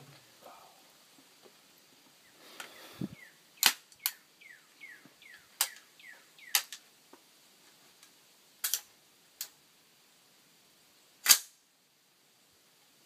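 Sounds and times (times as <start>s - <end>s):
rifle metallic clicks: 3.6s - 4.2s, 8.6s - 9.6s, 11.2s - 11.6s.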